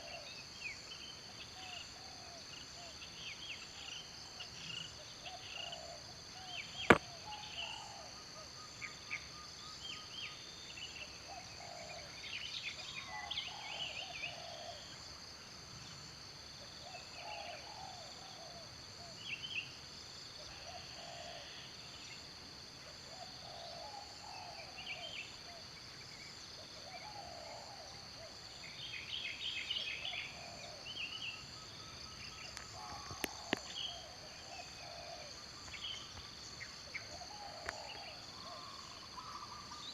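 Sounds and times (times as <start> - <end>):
insects chirping: 0.0 - 39.9
bird calls: 26.6 - 39.9.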